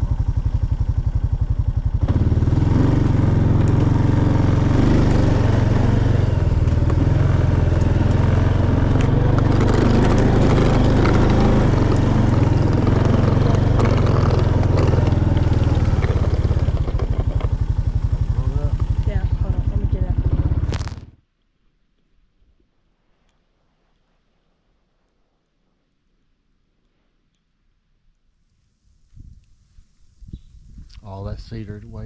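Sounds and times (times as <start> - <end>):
road noise: 0.0 - 21.2
vehicle engine running: 0.0 - 21.2.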